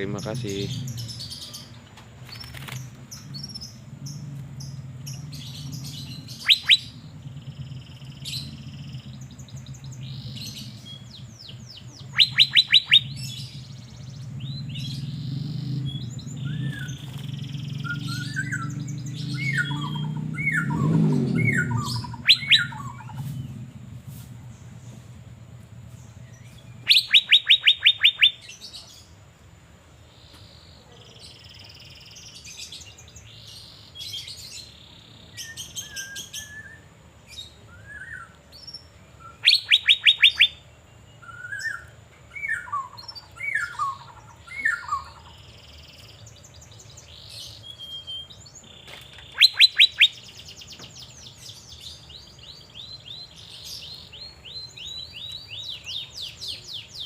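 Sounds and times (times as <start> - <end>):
bird song bursts: 0.0 - 29.2, 30.1 - 57.0
bird chirps and whistles: 5.8 - 7.1, 12.0 - 13.6, 15.9 - 23.5, 26.8 - 28.5, 39.2 - 40.6, 41.2 - 45.4, 49.3 - 50.4.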